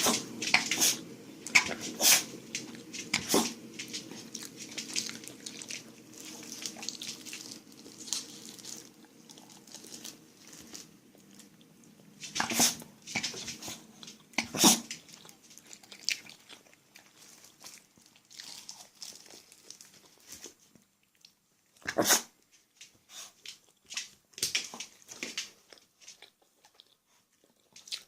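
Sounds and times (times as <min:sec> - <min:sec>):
dog sneezing: 0:00.0 - 0:01.0, 0:01.6 - 0:02.3, 0:03.2 - 0:03.6, 0:12.3 - 0:13.8, 0:14.4 - 0:14.9, 0:21.8 - 0:22.3
dog snorts and clicks: 0:00.0 - 0:04.0, 0:12.3 - 0:15.0.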